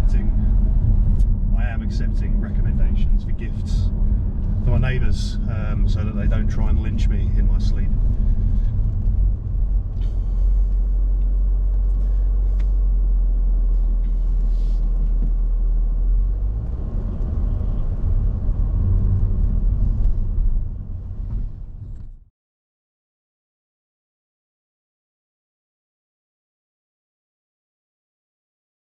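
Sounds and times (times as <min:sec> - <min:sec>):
engine exhaust rumble: 0:00.0 - 0:22.3.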